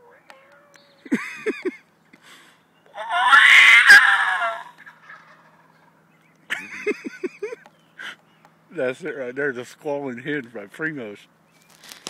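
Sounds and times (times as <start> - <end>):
turkey call yelps: 2.8 - 5.9.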